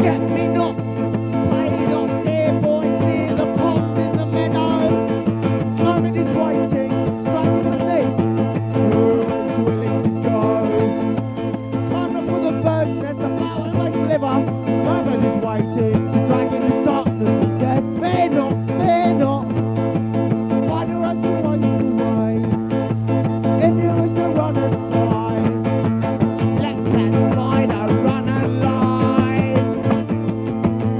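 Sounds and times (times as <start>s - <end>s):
guitar: 0.0s - 30.9s
sustained keyboard tones: 0.0s - 30.9s.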